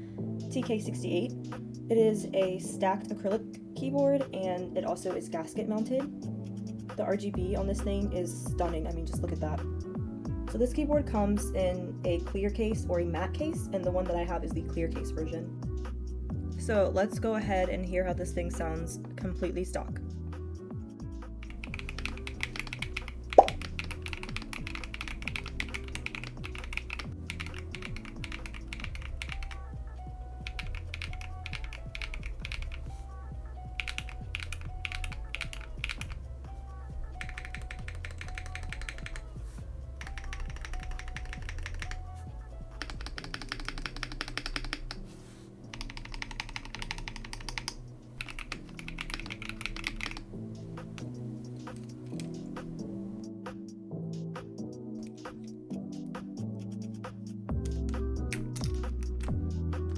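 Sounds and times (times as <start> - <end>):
mechanical keyboard keystroke clacks: 37.2 - 39.2, 40.0 - 42.0, 42.8 - 45.0, 45.7 - 50.2.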